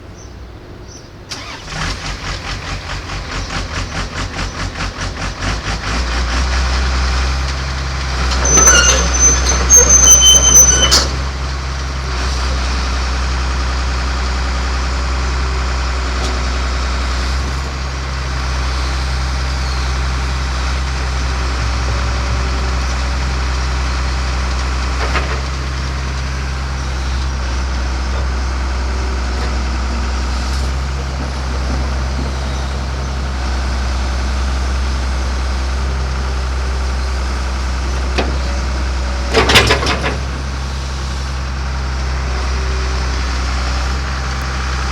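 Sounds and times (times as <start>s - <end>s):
diesel engine cranking and idling: 0.0s - 44.9s.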